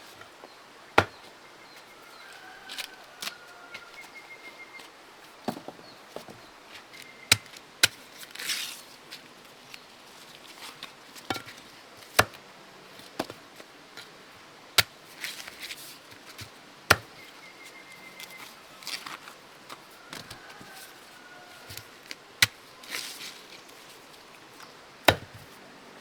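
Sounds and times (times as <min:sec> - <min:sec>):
rustling: 0:00.0 - 0:12.3, 0:14.8 - 0:25.7.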